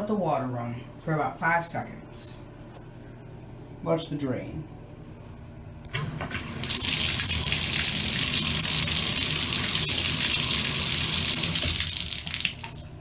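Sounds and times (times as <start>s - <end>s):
faucet turned on: 5.9s - 13.0s
water gushing into tub: 6.0s - 13.0s.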